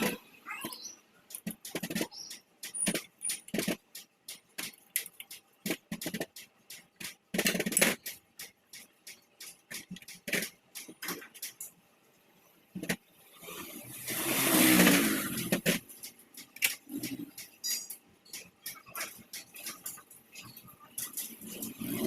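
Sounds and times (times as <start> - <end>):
metallic clicks of tools: 1.2 - 11.8, 15.3 - 22.0.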